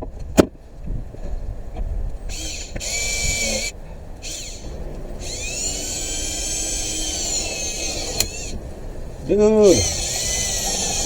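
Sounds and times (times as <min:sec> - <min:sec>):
power drill whining: 0:02.3 - 0:08.6, 0:09.4 - 0:11.0.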